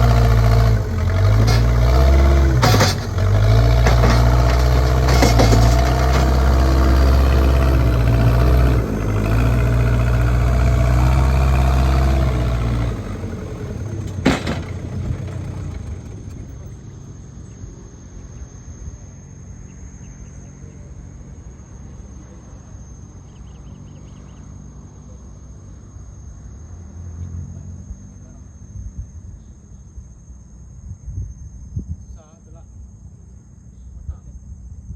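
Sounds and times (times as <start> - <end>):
diesel engine running: 0.0 - 28.4
sharp metallic clank: 2.6 - 6.5
insects chirring: 4.0 - 34.8.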